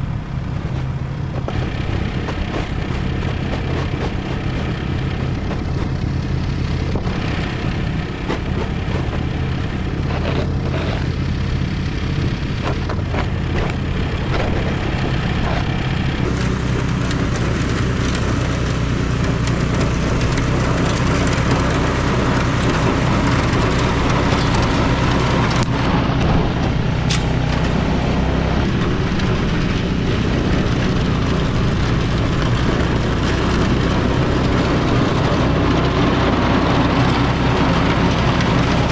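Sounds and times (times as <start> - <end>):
vehicle engine running: 0.0 - 38.9
knocks and clicks: 1.3 - 11.3.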